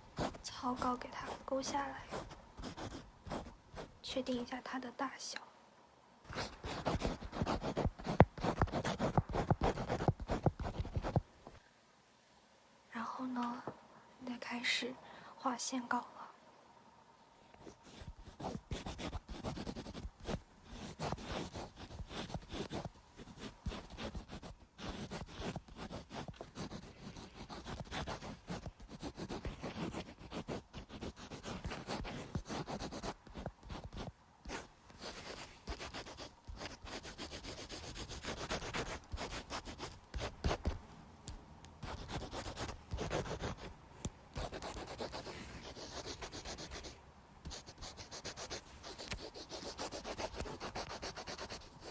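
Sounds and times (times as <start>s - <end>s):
pencil scratching on paper: 0.1s - 4.0s, 6.3s - 11.2s, 17.6s - 40.8s, 41.8s - 43.7s, 44.4s - 51.9s.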